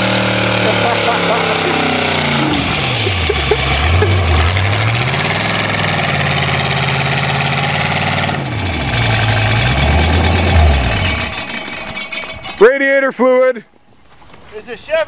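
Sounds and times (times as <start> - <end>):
car engine revving: 0.0 - 12.6.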